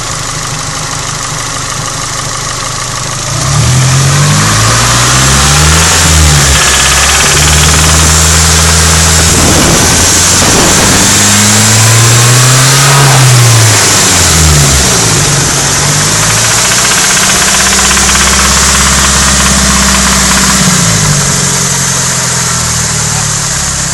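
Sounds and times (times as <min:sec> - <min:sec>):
engine idling and revving: 0:00.0 - 0:23.9
rattling engine knock: 0:06.1 - 0:12.6, 0:14.7 - 0:21.3.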